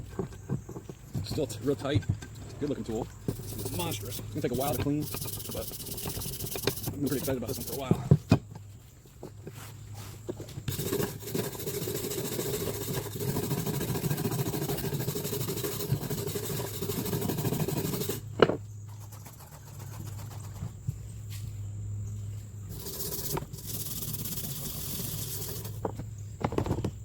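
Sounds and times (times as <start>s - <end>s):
wire brush scrubbing metal: 2.8s - 8.0s, 10.7s - 18.3s, 22.7s - 25.8s.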